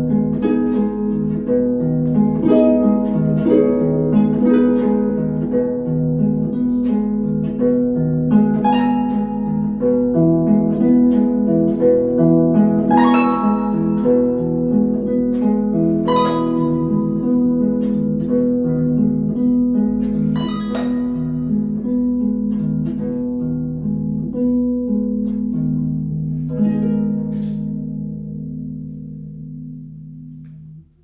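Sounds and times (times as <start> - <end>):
plucked harp notes: 0.0 - 31.0.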